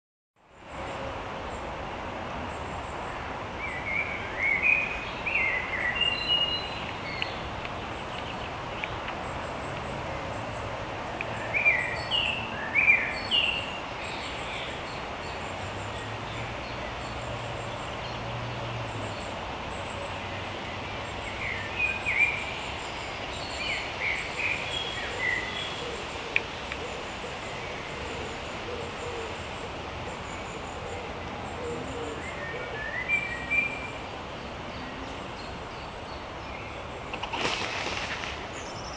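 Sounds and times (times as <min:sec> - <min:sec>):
steady background hiss: 0:00.5 - 0:38.9
birds calling: 0:18.8 - 0:38.9.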